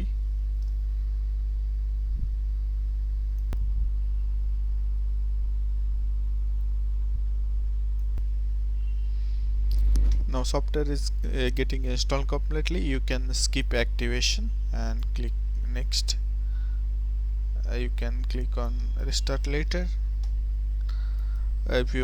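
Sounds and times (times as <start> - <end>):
buzzy mains hum: 0.0 - 22.0
faint clicks: 20.2 - 21.5.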